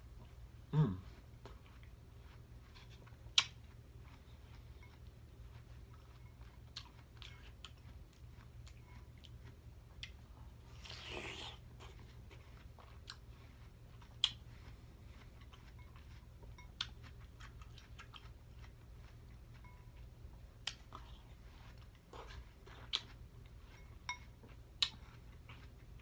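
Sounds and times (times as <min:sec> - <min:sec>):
low steady hum: 0:00.0 - 0:26.0
wet chewing mouth clicks: 0:01.4 - 0:09.4, 0:10.8 - 0:19.8, 0:20.6 - 0:21.0, 0:22.2 - 0:23.2, 0:24.8 - 0:25.7.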